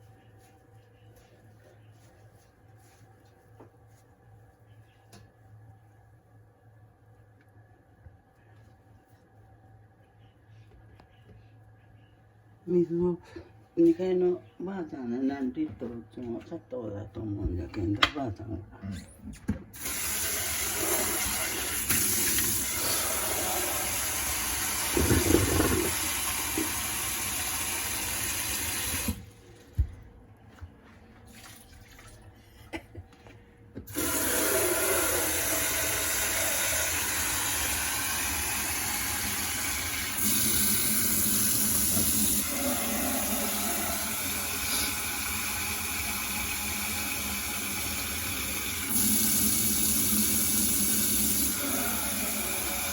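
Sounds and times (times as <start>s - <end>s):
tap water running into pot: 19.8s - 29.2s, 33.9s - 52.9s.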